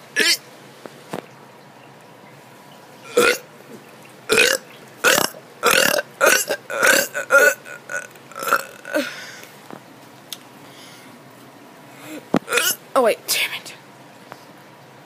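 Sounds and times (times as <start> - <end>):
child burping: 0.2 - 0.4, 3.1 - 3.5, 4.3 - 9.2, 12.1 - 12.8.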